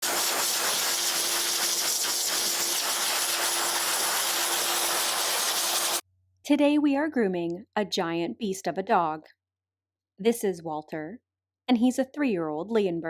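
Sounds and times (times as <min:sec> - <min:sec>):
pet dryer blowing air: 0:00.0 - 0:06.0.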